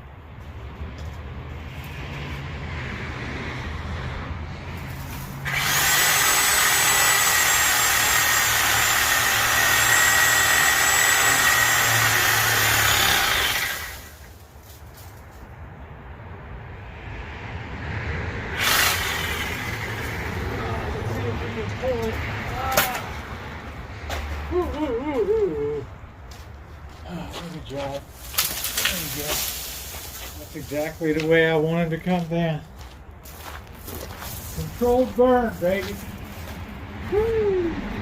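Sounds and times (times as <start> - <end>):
power saw cutting wood: 5.0 - 14.3, 18.5 - 20.7.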